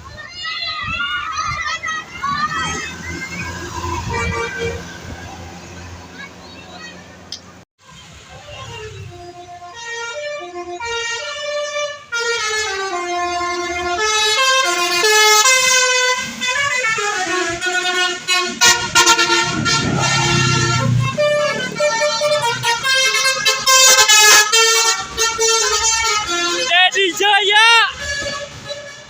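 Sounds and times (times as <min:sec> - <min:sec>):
musical bus horn melody: 0:03.7 - 0:05.1, 0:08.0 - 0:29.0
low engine rumble: 0:16.5 - 0:23.8.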